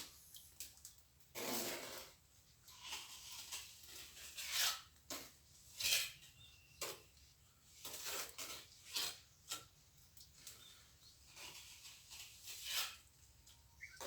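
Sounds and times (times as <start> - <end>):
trowel scraping mortar: 2.7 - 7.0, 7.7 - 9.7, 11.2 - 14.0.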